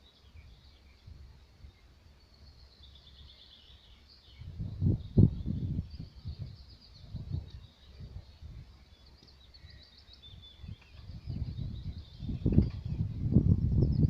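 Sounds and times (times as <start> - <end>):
small birds chirping: 0.0 - 14.0
wind buffeting microphone: 4.4 - 8.8, 10.2 - 14.0.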